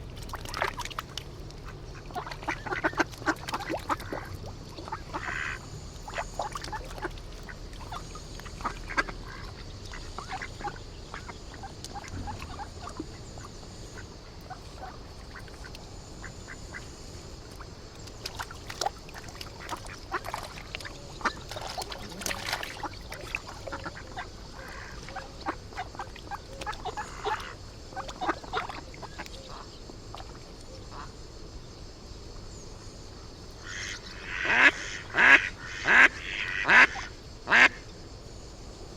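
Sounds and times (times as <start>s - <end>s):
steady background hiss: 0.0s - 38.9s
ducks quacking: 1.6s - 16.9s, 19.1s - 29.7s, 33.6s - 37.8s.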